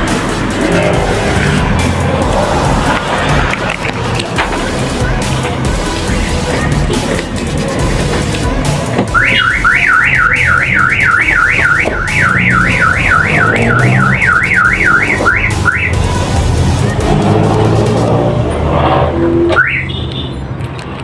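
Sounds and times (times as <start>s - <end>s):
car alarm siren warbling: 9.1s - 16.0s, 19.5s - 20.0s.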